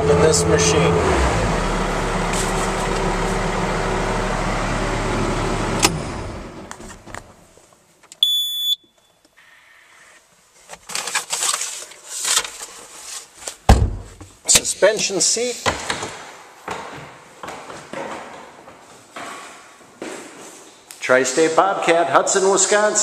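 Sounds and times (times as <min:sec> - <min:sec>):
cab blower fan: 0:00.0 - 0:06.7
diesel engine running: 0:00.0 - 0:07.4
short electronic beep: 0:08.2 - 0:09.2.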